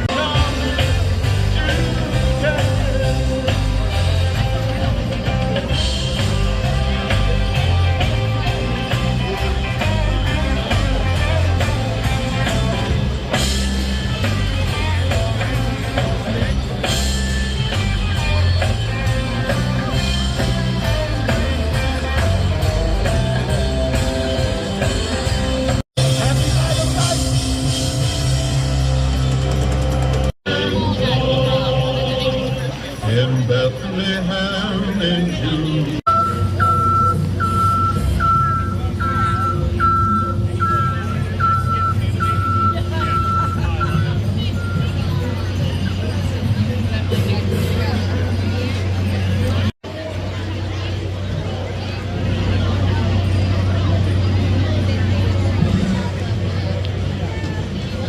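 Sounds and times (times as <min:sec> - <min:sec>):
rock and roll band playing: 0:00.0 - 0:45.6
person singing: 0:30.5 - 0:36.1.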